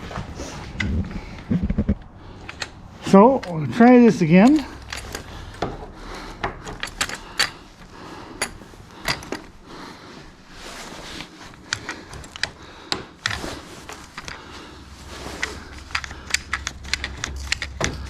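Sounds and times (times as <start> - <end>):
metal couplers clicking and knocking: 2.4 - 9.5, 11.5 - 14.4, 15.3 - 18.0.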